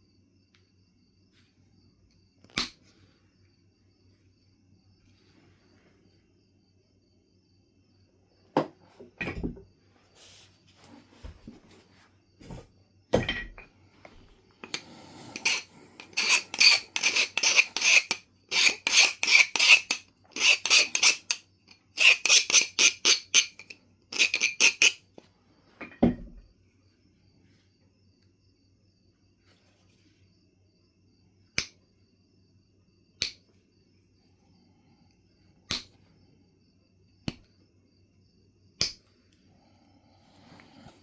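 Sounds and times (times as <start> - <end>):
rapid scraping of flint: 14.6 - 21.4, 22.0 - 25.0.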